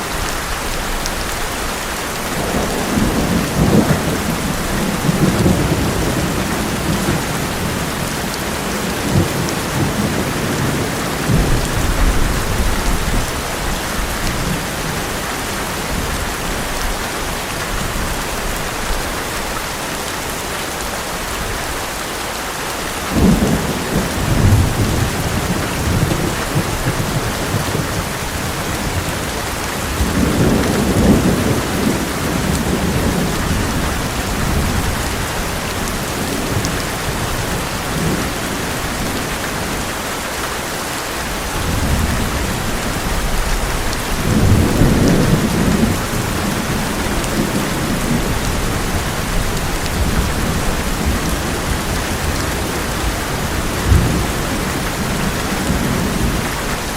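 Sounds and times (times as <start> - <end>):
heavy rain on a metal roof: 0.0 - 56.9
thunder rumbling: 2.3 - 15.2, 23.0 - 39.9, 41.3 - 56.9.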